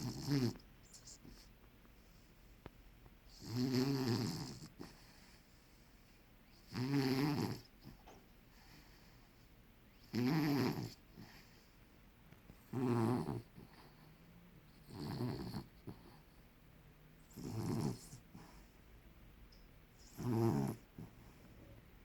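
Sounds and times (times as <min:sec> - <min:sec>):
dog snoring: 0:00.0 - 0:01.5, 0:03.3 - 0:05.8, 0:06.4 - 0:11.7, 0:12.6 - 0:16.4, 0:17.2 - 0:18.7, 0:19.9 - 0:21.4.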